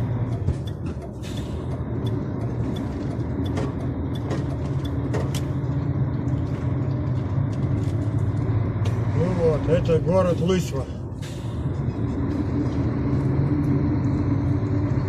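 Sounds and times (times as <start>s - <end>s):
truck diesel engine hum: 0.0s - 15.0s
light ticking: 0.3s - 6.3s
sharp clicks: 0.6s - 5.6s.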